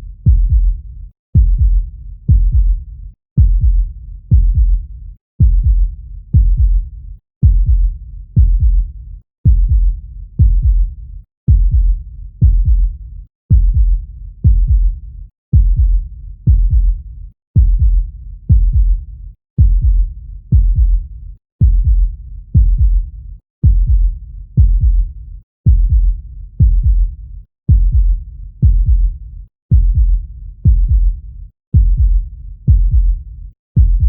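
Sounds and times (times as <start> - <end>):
heartbeat thumps: 0.0 - 0.8, 1.4 - 17.0, 17.6 - 33.2, 33.8 - 34.0.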